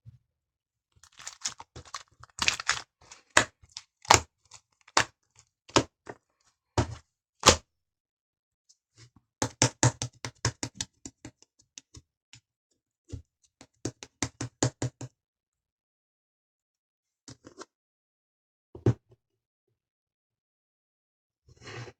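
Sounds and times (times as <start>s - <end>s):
slime clicking and popping: 2.4s - 2.8s.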